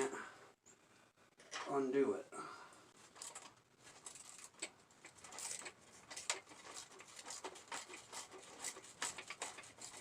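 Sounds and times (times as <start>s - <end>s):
wrench clicking and scraping: 3.2s - 10.0s.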